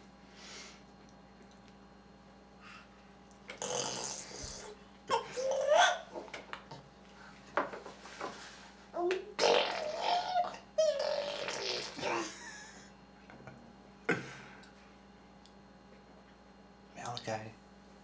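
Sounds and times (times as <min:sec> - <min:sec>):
baby blowing raspberries: 0:03.6 - 0:05.8, 0:09.4 - 0:12.3.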